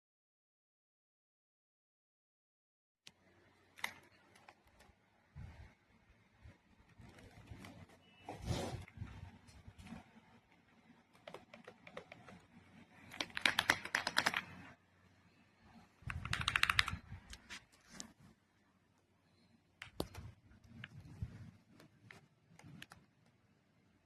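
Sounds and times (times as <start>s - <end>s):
mechanical keyboard typing: 11.1s - 14.8s, 16.0s - 17.4s.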